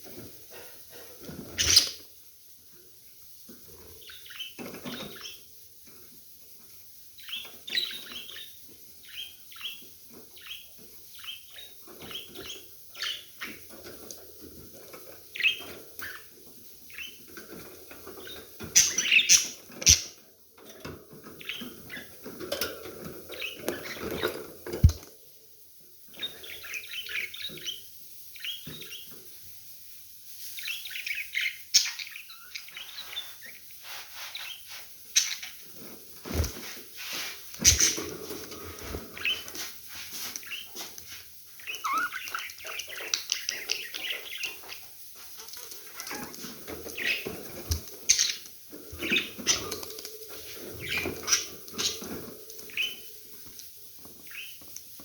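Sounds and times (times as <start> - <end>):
budgerigars chirping: 1.4 - 2.1, 4.0 - 5.5, 7.2 - 13.7, 15.3 - 16.3, 16.9 - 20.2, 21.3 - 22.2, 26.1 - 29.1, 30.6 - 33.7, 37.6 - 39.6, 41.6 - 49.8, 50.8 - 53.1.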